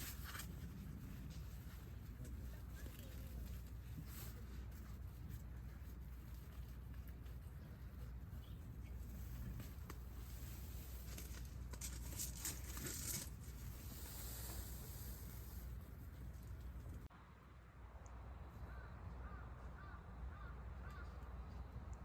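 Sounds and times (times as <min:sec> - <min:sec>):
rustling and crackling: 0:00.0 - 0:17.1.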